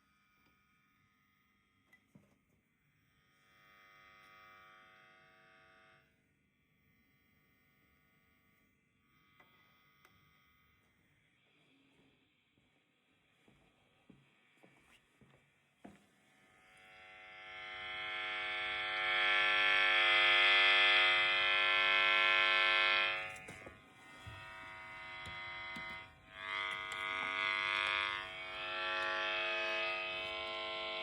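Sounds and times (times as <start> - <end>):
electrical interference buzz: 16.5 - 31.0.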